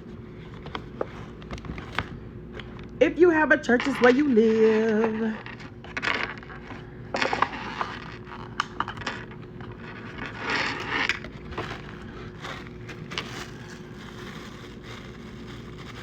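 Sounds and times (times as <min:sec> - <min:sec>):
takeout packaging handled: 0:07.2 - 0:16.0.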